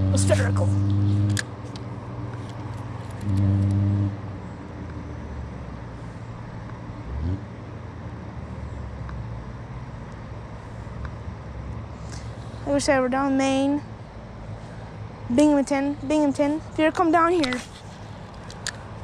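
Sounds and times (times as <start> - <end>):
engine revving up: 0.0 - 1.5, 3.2 - 4.3, 7.0 - 7.6
vehicle engine humming: 0.0 - 19.0.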